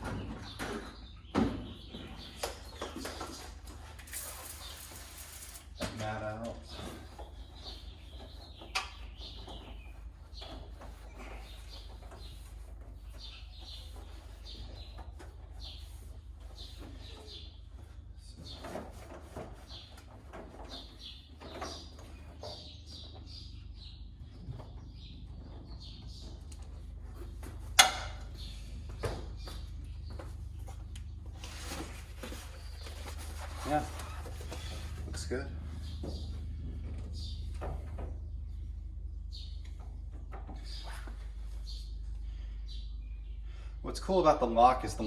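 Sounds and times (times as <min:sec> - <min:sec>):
steady low hum: 0:00.0 - 0:45.0
cloth squeaking on metal: 0:31.4 - 0:36.3.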